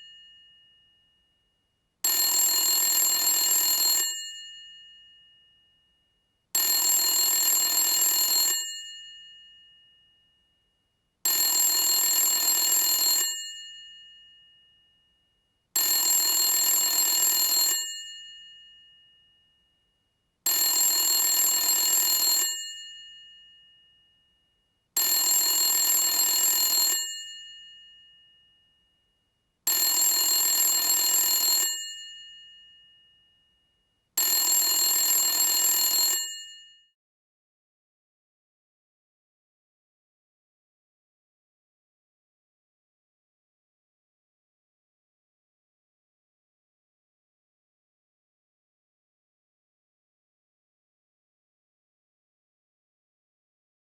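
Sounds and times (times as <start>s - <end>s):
telephone bell ringing: 0.0s - 1.3s, 2.0s - 5.8s, 6.6s - 10.4s, 11.3s - 15.1s, 15.8s - 19.7s, 20.5s - 24.4s, 25.0s - 28.8s, 29.7s - 33.6s, 34.2s - 37.0s.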